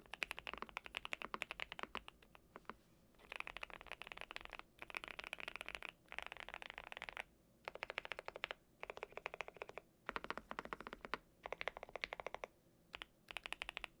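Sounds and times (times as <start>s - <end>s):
fast typing on mechanical keyboard: 0.0s - 2.2s, 3.2s - 14.0s.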